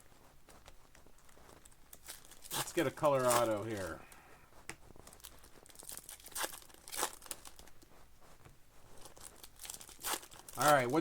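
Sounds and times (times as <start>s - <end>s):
short rustles: 0.0s - 11.0s
card pack wrapper tearing: 1.9s - 3.9s, 5.2s - 7.6s, 9.1s - 11.0s.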